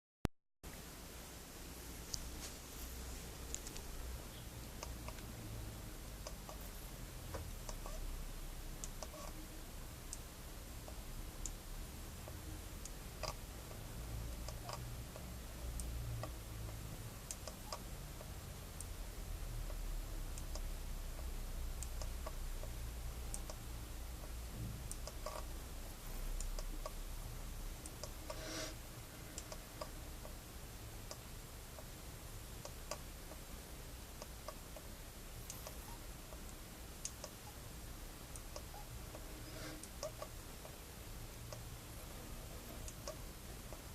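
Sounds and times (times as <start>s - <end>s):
faint small clicks: 3.5s - 3.9s, 19.7s - 25.5s, 29.3s - 30.4s, 31.1s - 31.9s.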